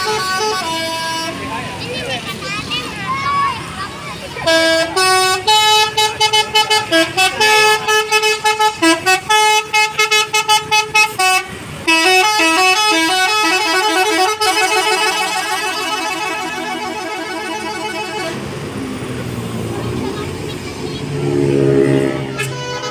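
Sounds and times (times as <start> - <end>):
musical air horn playing tune: 0.0 - 1.4, 4.4 - 18.5, 21.2 - 22.9.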